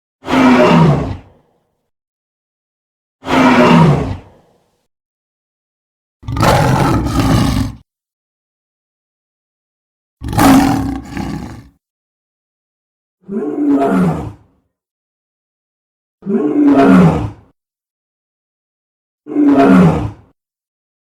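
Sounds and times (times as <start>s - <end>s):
dragon roars: 0.2s - 1.4s, 3.2s - 4.6s, 6.2s - 7.8s, 10.2s - 11.7s, 19.3s - 20.2s.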